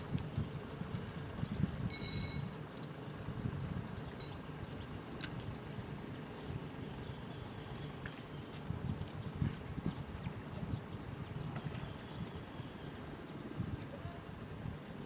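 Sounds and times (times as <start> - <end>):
insect trilling: 0.0 - 14.7
short ringing tone: 1.5 - 4.5.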